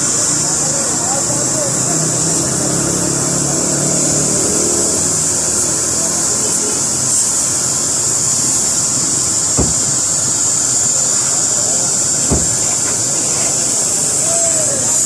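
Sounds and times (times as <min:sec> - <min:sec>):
dull thumps: 0:09.2 - 0:13.2
water jet spraying: 0:09.6 - 0:10.4, 0:11.7 - 0:13.1.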